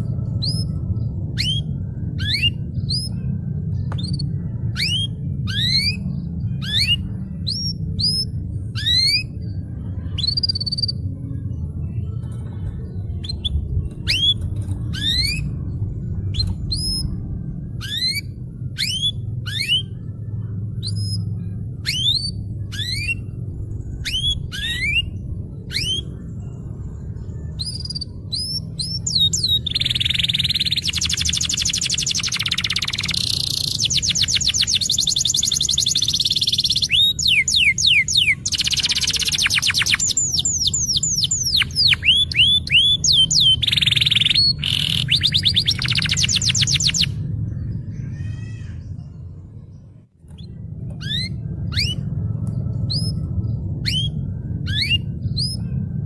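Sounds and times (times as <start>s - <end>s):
steady low hum: 0.0s - 56.0s
canary singing whistled notes: 0.4s - 3.2s, 3.9s - 9.6s, 13.2s - 15.6s, 17.8s - 20.0s, 20.8s - 23.4s, 24.0s - 26.2s, 27.5s - 47.2s, 50.3s - 52.1s, 52.9s - 55.7s.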